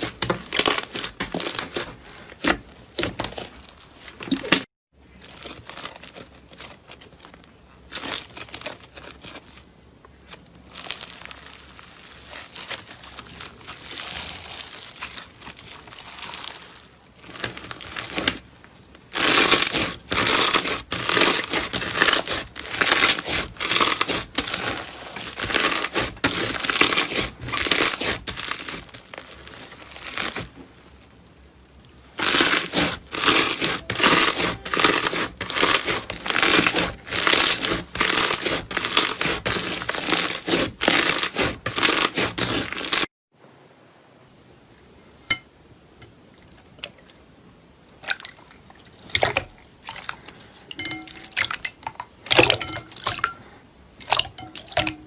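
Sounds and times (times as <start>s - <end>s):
slime kneaded by hand: 0.0s - 31.2s, 32.0s - 43.1s.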